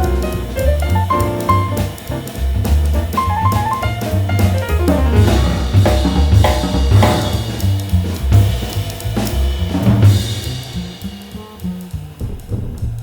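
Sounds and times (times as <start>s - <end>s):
band playing: 0.0s - 8.4s
bass drum and snare hits: 0.0s - 13.0s.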